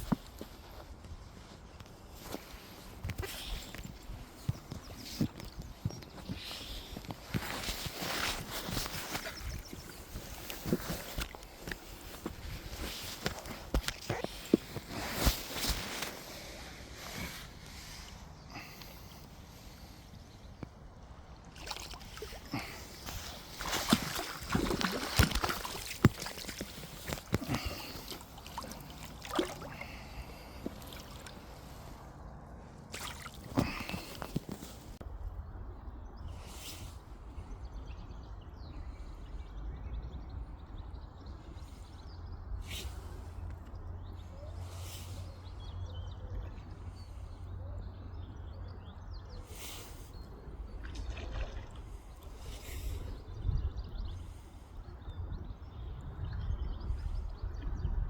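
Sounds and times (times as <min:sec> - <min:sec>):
wind rumbling on microphone: 0:00.0 - 0:17.9, 0:50.1 - 0:58.0
water sloshing and lapping: 0:00.0 - 0:19.2, 0:21.4 - 0:32.0, 0:32.8 - 0:35.0, 0:49.6 - 0:53.2.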